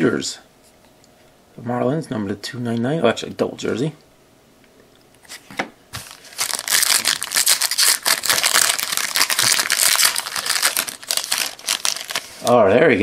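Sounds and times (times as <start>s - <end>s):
plastic wrapper crinkling: 6.0s - 12.6s.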